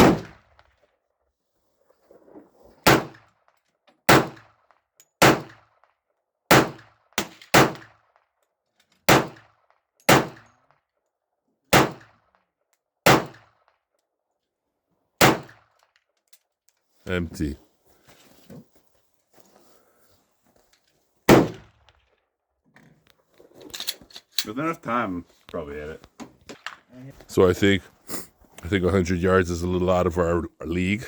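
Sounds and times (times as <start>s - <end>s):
pistol shots with echo: 0.0s - 0.4s, 2.9s - 3.2s, 4.1s - 4.5s, 5.2s - 5.6s, 6.5s - 7.9s, 9.1s - 9.5s, 10.1s - 10.5s, 11.7s - 12.1s, 13.0s - 13.6s, 15.2s - 15.6s, 21.3s - 21.7s.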